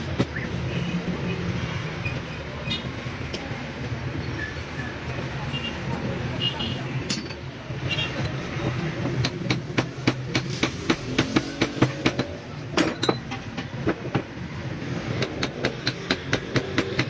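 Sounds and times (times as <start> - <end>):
sharp metallic knocks and taps: 8.1 - 14.4, 15.1 - 17.0.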